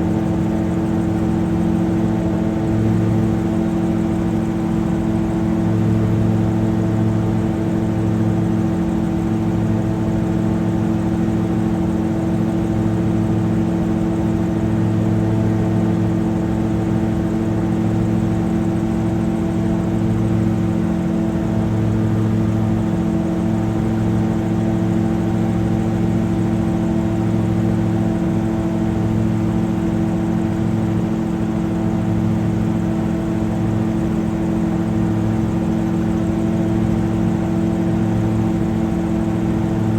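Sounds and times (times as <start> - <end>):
drone propellers humming: 0.0 - 17.8.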